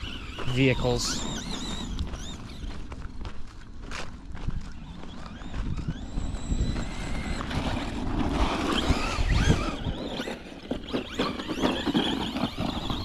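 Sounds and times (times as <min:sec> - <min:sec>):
electric motor whining: 0:00.0 - 0:13.0
wind buffeting microphone: 0:00.0 - 0:13.0
toy truck knocking and clattering: 0:08.4 - 0:13.0.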